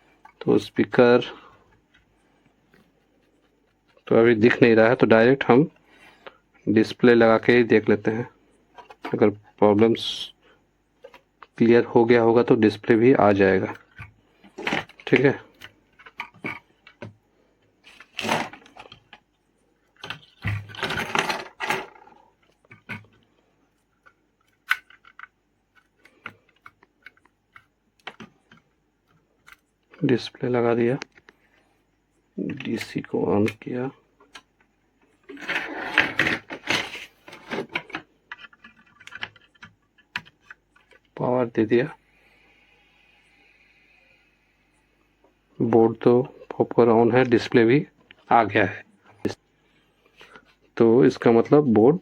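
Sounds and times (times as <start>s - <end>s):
small laptop parts clattering: 7.4s - 9.6s, 13.5s - 17.2s, 17.8s - 30.0s, 32.5s - 41.2s
laptop rubbing and scraping: 35.3s - 37.7s.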